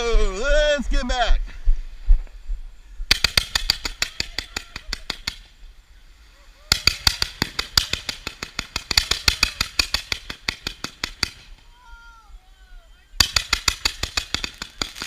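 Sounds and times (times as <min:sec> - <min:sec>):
firework popping: 0:03.1 - 0:05.7, 0:06.6 - 0:11.8, 0:13.2 - 0:15.0.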